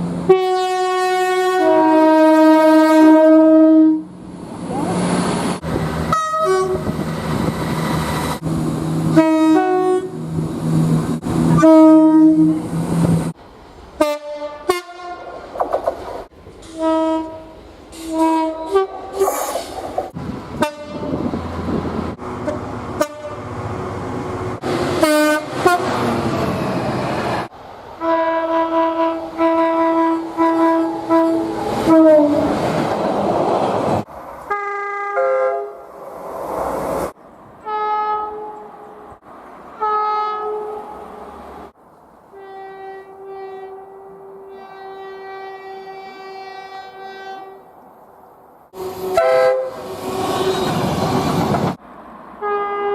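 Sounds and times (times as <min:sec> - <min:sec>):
trains passing on rails: 0:00.0 - 0:52.9
train horn toots and blasts: 0:00.3 - 0:04.1, 0:06.1 - 0:06.9, 0:09.1 - 0:10.2, 0:11.5 - 0:12.7, 0:14.0 - 0:15.3, 0:16.6 - 0:19.3, 0:20.6 - 0:21.3, 0:22.4 - 0:23.5, 0:25.0 - 0:26.0, 0:28.0 - 0:32.5, 0:34.5 - 0:35.8, 0:37.6 - 0:39.1, 0:39.8 - 0:40.9, 0:42.3 - 0:47.7, 0:48.8 - 0:50.8, 0:52.4 - 0:52.9.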